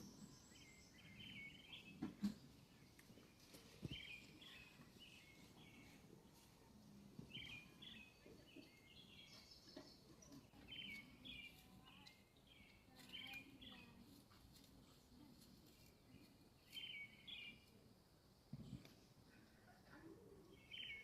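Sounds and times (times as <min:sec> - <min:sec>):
small bird chirping: 0:00.0 - 0:06.5, 0:07.3 - 0:14.1, 0:15.7 - 0:17.8, 0:20.5 - 0:21.0
faint outdoor ambience: 0:00.0 - 0:21.0.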